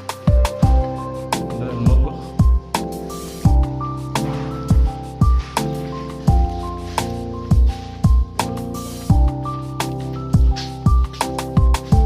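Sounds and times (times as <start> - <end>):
music with drums and chords: 0.0 - 12.0.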